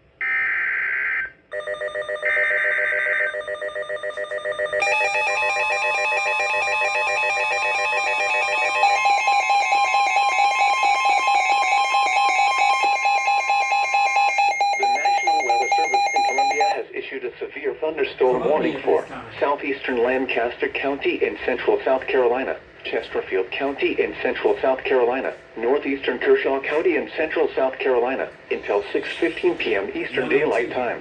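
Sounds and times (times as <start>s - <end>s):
rapidly pulsing electronic alarm: 0.2s - 16.8s.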